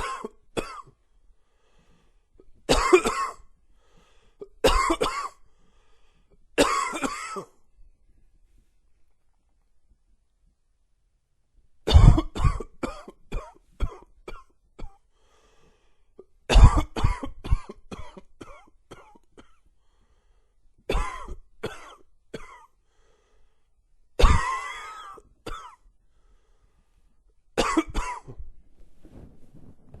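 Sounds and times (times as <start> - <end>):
man coughing: 0.0 - 0.9, 2.7 - 3.5, 4.4 - 5.4, 6.6 - 7.6, 11.9 - 15.0, 16.5 - 19.6, 20.9 - 22.7, 24.2 - 25.8, 27.6 - 28.4
raspy inhale: 1.0 - 2.3, 3.7 - 4.4, 5.4 - 6.4, 15.1 - 16.2, 19.8 - 20.6, 22.8 - 23.8, 26.0 - 27.2.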